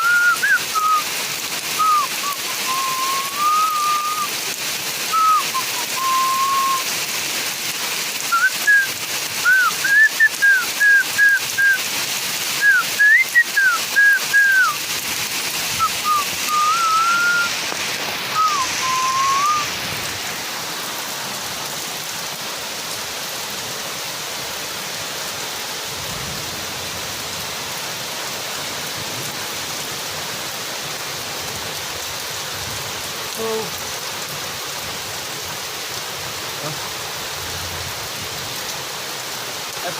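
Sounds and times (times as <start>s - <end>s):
whistled notes: 0.0s - 1.1s, 1.8s - 4.3s, 5.1s - 6.9s, 8.3s - 11.8s, 12.6s - 14.8s, 15.8s - 17.6s, 18.3s - 19.7s
steady rain falling: 0.0s - 39.9s.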